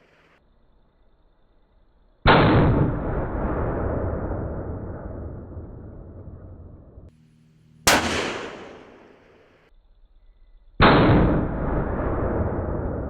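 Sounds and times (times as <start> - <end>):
rifle shots: 7.9 - 9.3.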